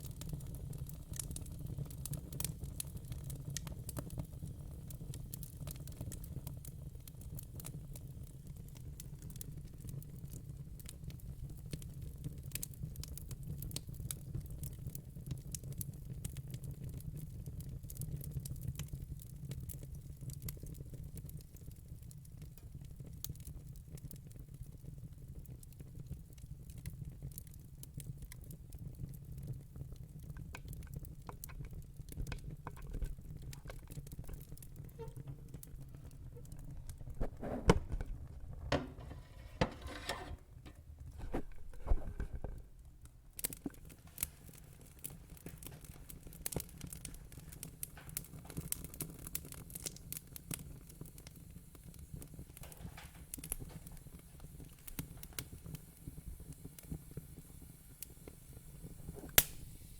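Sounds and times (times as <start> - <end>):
fire crackling: 0.0 - 59.9
faint hiss: 50.0 - 59.9.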